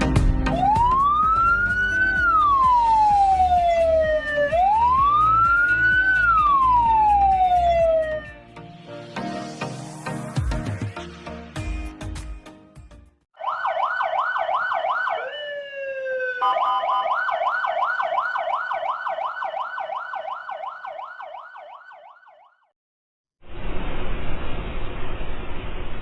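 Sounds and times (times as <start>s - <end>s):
emergency vehicle siren yelping: 0.5s - 8.4s, 13.4s - 22.7s.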